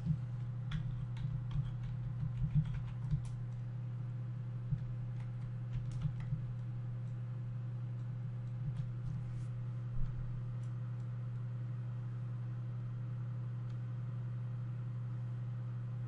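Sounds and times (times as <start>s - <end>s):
steady low hum: 0.0s - 16.0s
computer keyboard typing: 0.7s - 3.4s, 5.1s - 6.6s.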